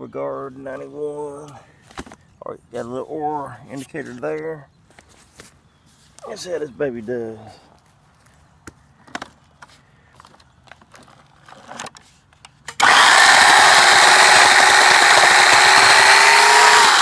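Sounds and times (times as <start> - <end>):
electric chainsaw cutting wood: 12.8 - 17.0.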